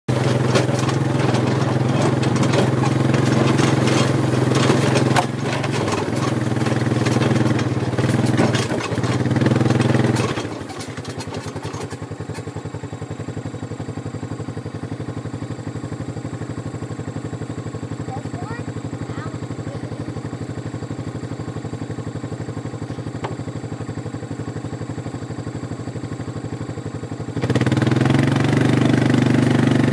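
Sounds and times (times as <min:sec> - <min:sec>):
vehicle engine running: 0:00.0 - 0:29.9
clattering: 0:00.1 - 0:12.0.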